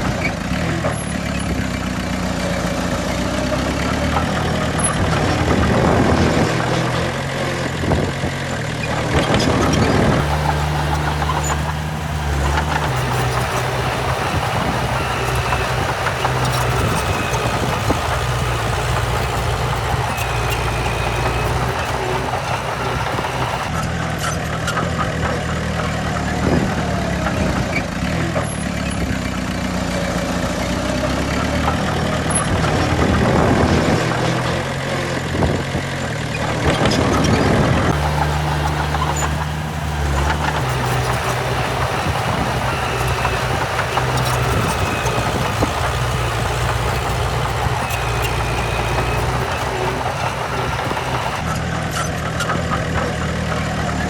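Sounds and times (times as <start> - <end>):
heavy diesel engines running: 10.2 - 23.8, 37.9 - 51.5.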